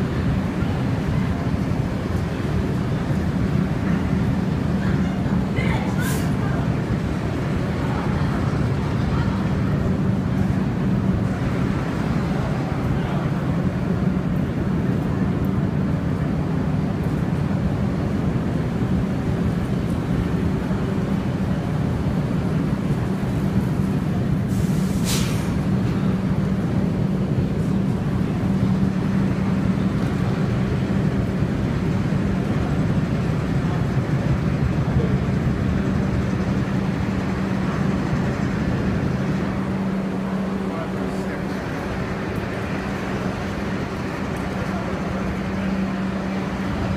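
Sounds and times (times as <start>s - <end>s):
subway car rumbling: 0.0s - 46.9s
short sharp hiss: 24.5s - 25.6s.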